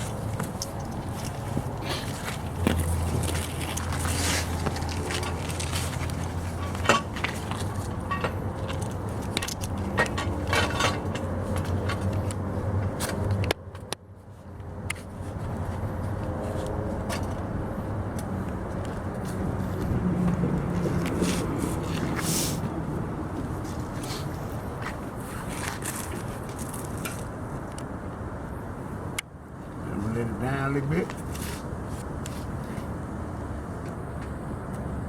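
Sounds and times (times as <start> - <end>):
low engine hum: 0.0 - 26.6.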